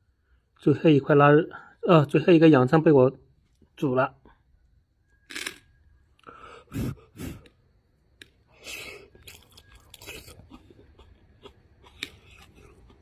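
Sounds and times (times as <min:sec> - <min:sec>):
person chewing food: 0:08.2 - 0:13.0.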